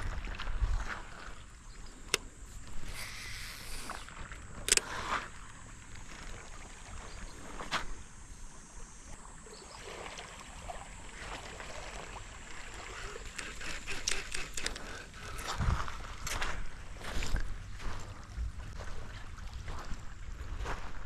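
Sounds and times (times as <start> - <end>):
small waves lapping on shore: 0.0 - 21.0
sharp clicks: 4.6 - 4.9, 13.2 - 15.5.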